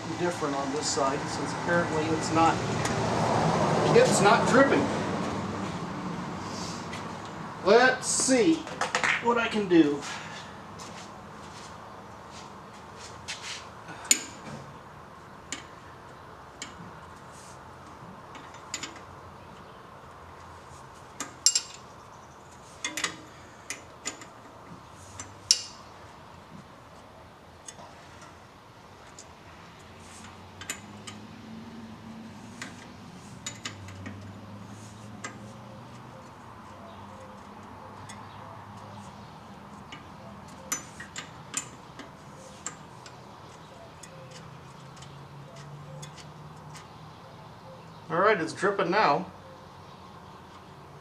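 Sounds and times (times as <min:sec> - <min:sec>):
rustle: 0:08.4 - 0:47.2
metal tools clicking: 0:22.8 - 0:24.4, 0:39.8 - 0:46.9.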